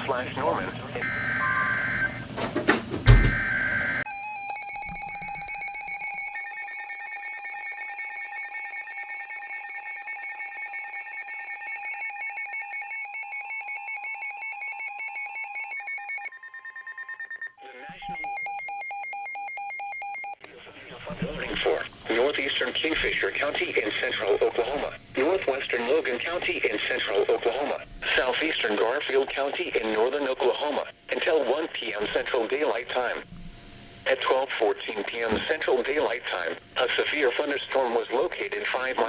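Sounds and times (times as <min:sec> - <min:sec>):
piercing attention tone: 0:16.3 - 0:28.5.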